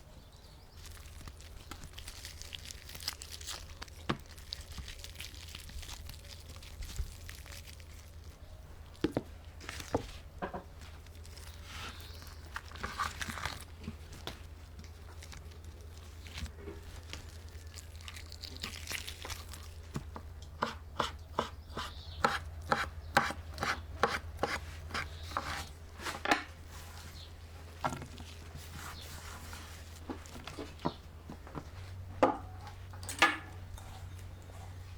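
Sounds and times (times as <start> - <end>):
knife chopping on cutting board: 20.6 - 25.6.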